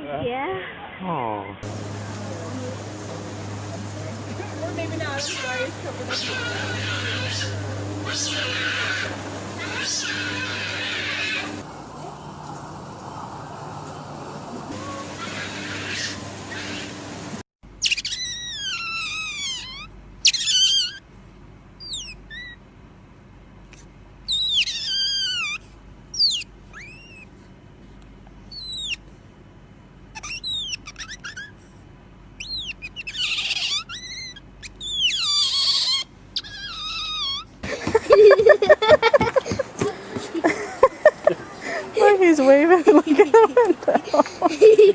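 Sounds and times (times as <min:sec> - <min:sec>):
otter chirping: 0:17.8 - 0:21.0, 0:21.8 - 0:22.6, 0:24.2 - 0:27.4, 0:28.4 - 0:29.1, 0:30.1 - 0:37.6.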